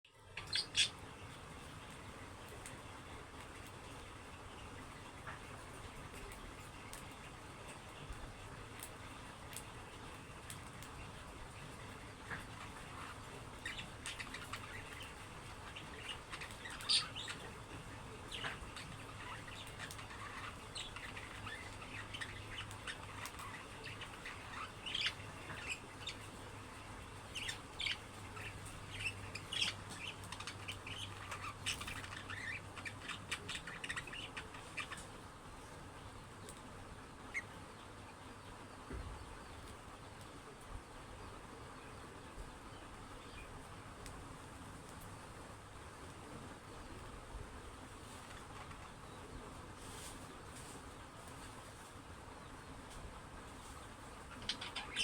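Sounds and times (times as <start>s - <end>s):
budgerigars chirping: 0.4s - 1.0s, 12.5s - 35.0s, 54.2s - 55.0s.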